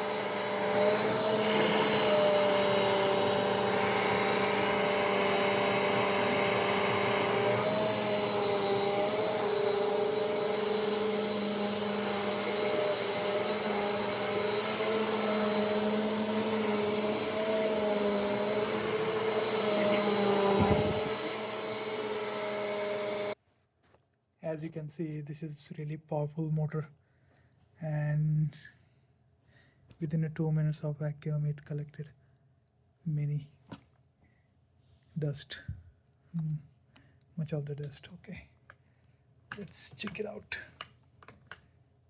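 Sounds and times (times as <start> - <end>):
vacuum cleaner running: 0.0 - 23.4.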